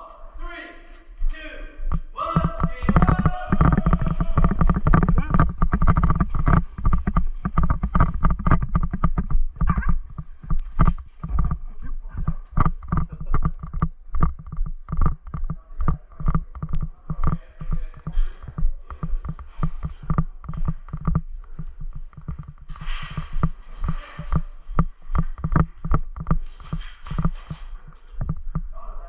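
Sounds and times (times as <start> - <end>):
sharp clicks: 1.8 - 11.6
footsteps thudding: 1.8 - 28.7.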